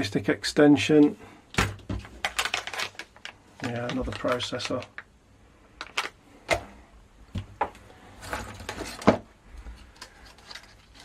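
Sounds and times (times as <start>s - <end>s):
packaging rustle: 2.0s - 5.1s, 5.8s - 6.6s, 9.8s - 11.0s.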